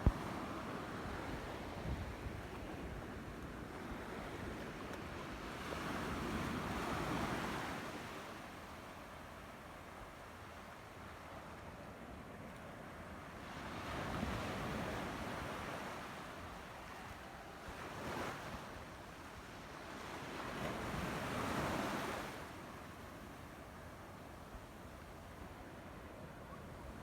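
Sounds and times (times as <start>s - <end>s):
wind on microphone: 0.0s - 5.2s.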